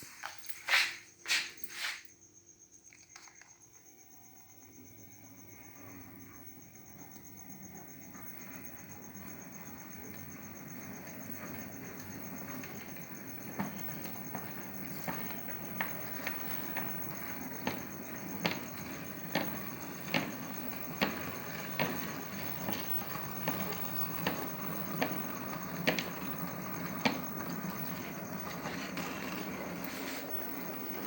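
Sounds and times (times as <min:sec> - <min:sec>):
low running hum: 0:04.6 - 0:31.0
train wheels clicking over rail joints: 0:07.2 - 0:31.0.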